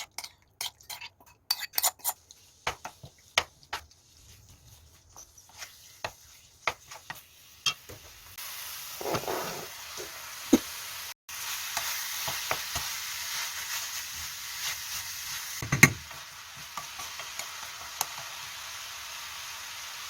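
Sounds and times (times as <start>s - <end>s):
spatula scraping pan: 0.0s - 8.0s, 8.9s - 10.2s
food sizzling in frying pan: 2.4s - 20.0s.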